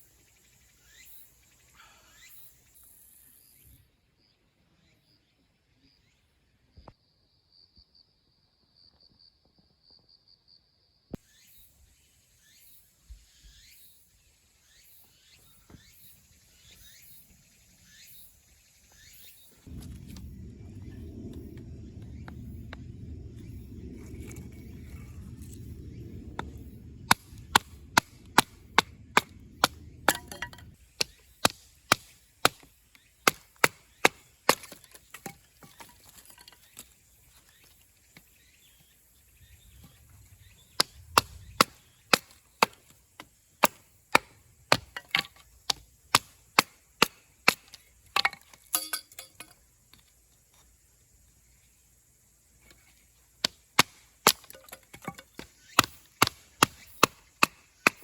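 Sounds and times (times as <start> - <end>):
chopping strikes on wood: 27.1 - 35.9, 40.8 - 48.5, 53.4 - 58.0.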